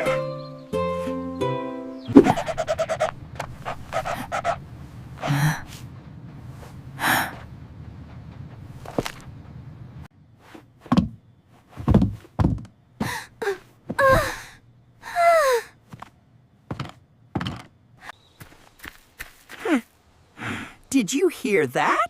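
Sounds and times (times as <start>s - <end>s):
dull thumps and knocks: 10.8s - 13.2s, 15.9s - 17.8s.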